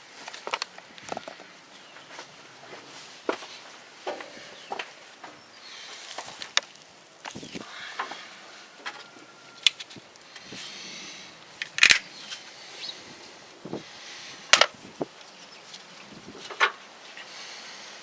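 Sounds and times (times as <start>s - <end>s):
wind noise: 7.2s - 7.7s, 9.2s - 15.2s, 16.0s - 16.8s.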